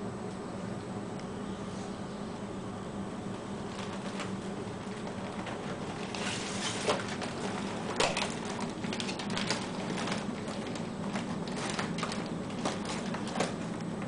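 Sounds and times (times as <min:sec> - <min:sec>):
food bag crinkling: 0:03.6 - 0:14.0.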